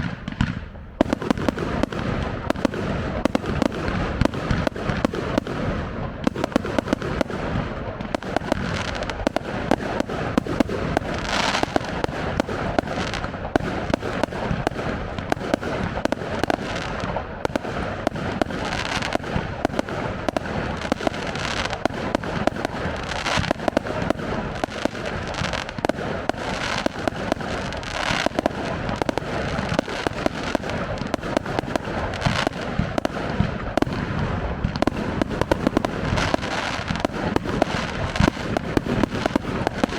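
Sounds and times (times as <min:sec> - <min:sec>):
fireworks crackling and popping: 0:00.0 - 0:39.9
loud firework bangs: 0:00.0 - 0:39.9.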